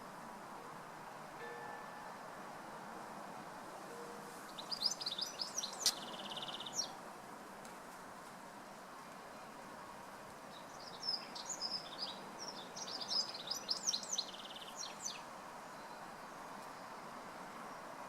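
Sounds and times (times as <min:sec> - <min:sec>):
songbird singing with trill: 0:04.5 - 0:07.0, 0:10.5 - 0:17.1.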